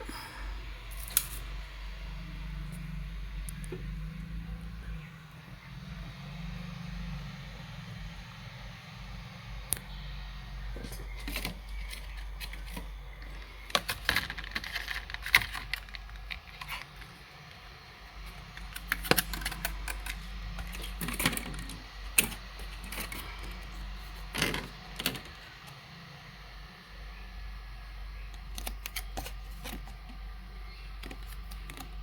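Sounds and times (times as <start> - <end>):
laptop parts clicking and clattering: 10.8 - 17.2, 18.2 - 25.4, 28.4 - 30.2, 31.0 - 32.0.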